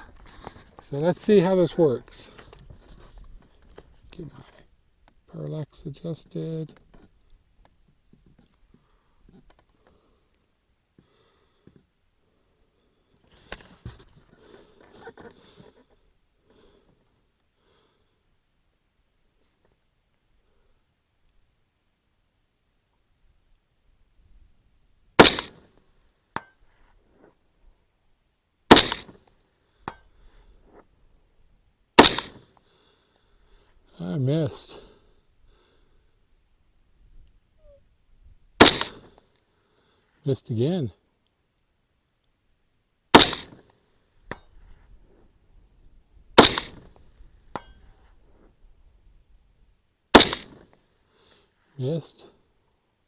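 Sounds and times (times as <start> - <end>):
rifle shots with echo: 25.2 - 25.6, 28.7 - 29.2, 32.0 - 32.4, 38.6 - 39.1, 43.1 - 43.6, 46.4 - 46.9, 50.1 - 50.6
faint metallic ping: 26.4 - 26.7.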